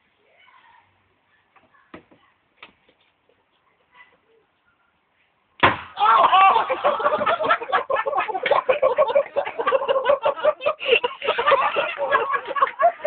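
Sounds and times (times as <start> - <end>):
spud gun bang: 5.6 - 6.0
loud voices: 6.0 - 13.0.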